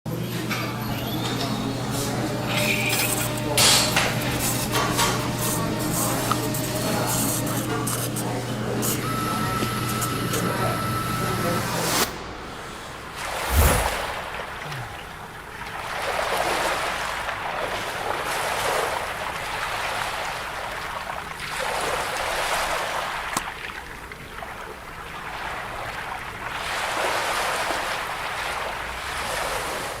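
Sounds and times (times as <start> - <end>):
waves washing in and drawing back: 11.5 - 30.0.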